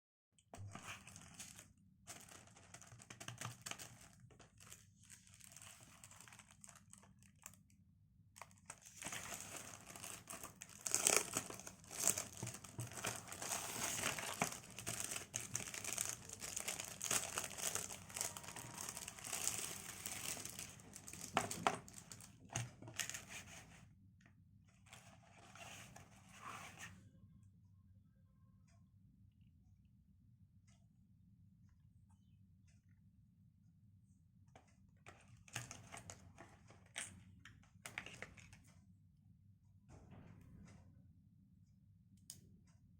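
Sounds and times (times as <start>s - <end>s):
packaging crinkling and tearing: 0.6s - 7.6s, 8.4s - 23.4s.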